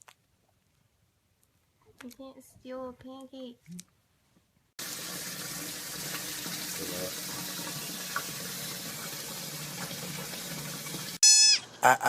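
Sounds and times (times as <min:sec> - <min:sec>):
faint pitched tone: 0:11.2 - 0:11.7.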